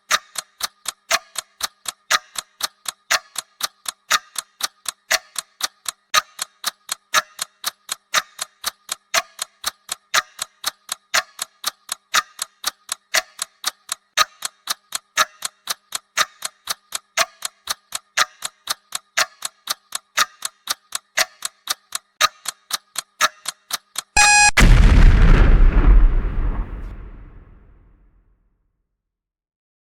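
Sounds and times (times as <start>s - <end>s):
clock ticking: 0.0s - 26.5s
short tone: 24.2s - 24.6s
explosion blast: 24.2s - 27.9s.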